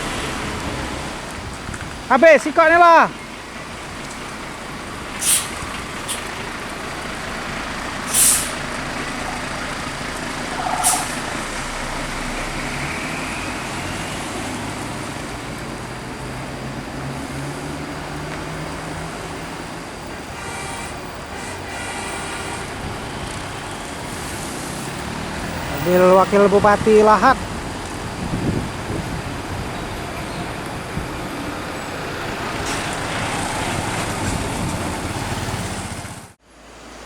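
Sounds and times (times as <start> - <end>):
heavy vehicle engine pulling away: 0.0 - 37.0
air brake hisses: 5.2 - 6.3, 8.0 - 8.6, 10.6 - 11.4.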